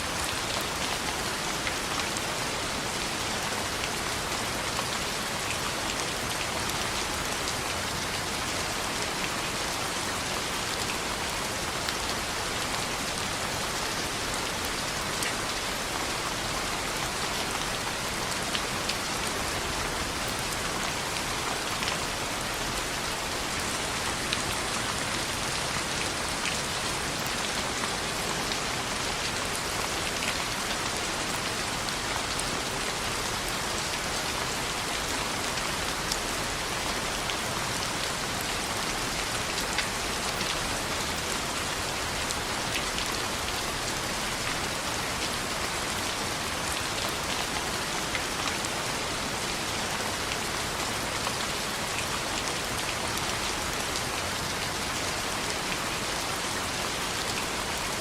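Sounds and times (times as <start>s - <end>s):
rain on a window: 0.0s - 58.0s.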